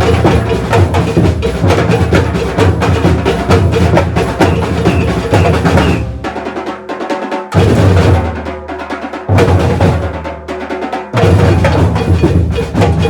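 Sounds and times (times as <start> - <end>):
surdo bass drums: 0.0 - 6.3
snare and higher drums: 0.0 - 13.0.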